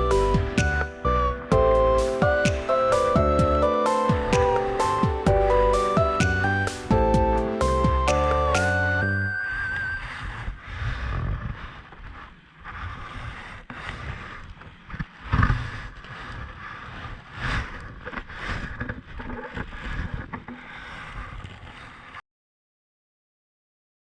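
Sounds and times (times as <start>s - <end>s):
water lapping against paddleboard: 10.7s - 22.2s.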